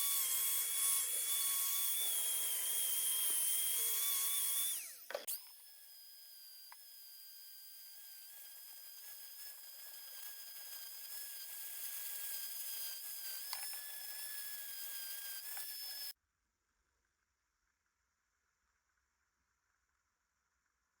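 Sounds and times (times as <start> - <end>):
power tool high-pitched whine: 0.0 - 16.2.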